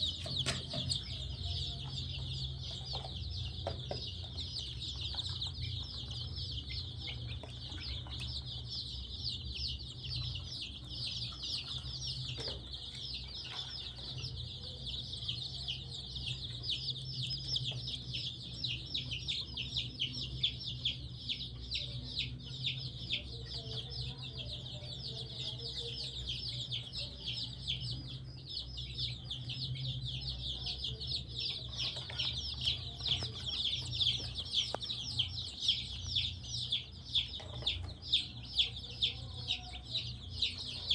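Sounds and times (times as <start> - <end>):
chicks peeping: 0.0 - 40.9.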